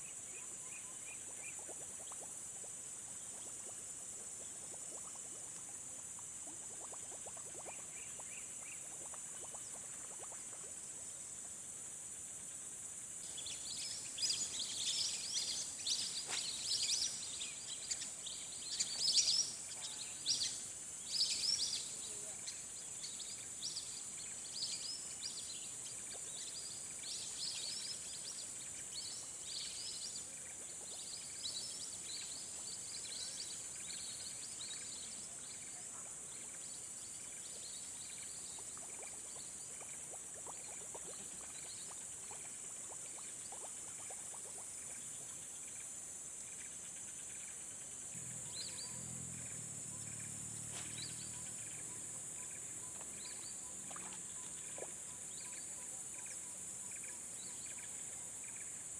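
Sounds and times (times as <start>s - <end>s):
bird chirps: 13.2s - 36.8s, 48.2s - 58.7s.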